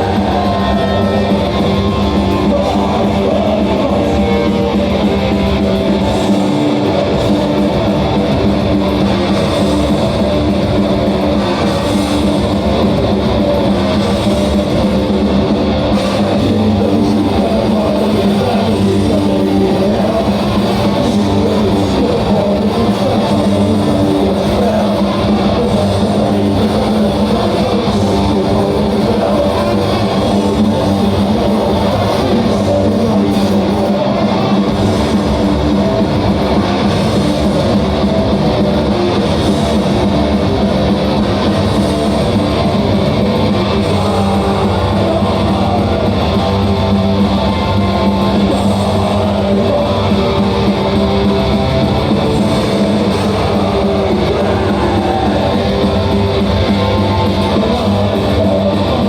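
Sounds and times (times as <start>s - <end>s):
electric guitars: 0.0s - 59.0s
heavy metal band playing live: 0.0s - 59.0s.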